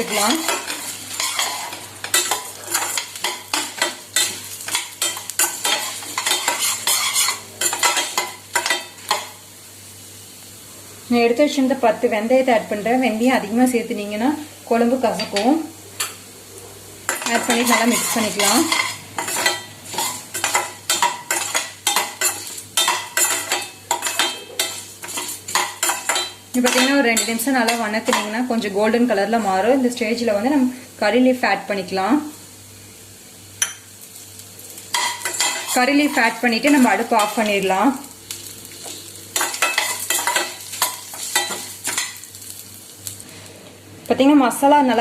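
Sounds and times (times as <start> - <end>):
spices scraping and clicking in a pan: 0.0 - 9.4, 17.0 - 28.7, 33.6 - 43.3
light sizzle: 0.0 - 45.0.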